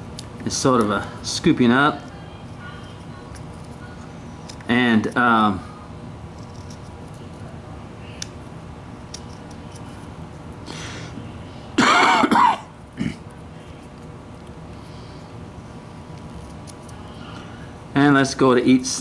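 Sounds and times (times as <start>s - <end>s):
man coughing: 11.8s - 13.2s.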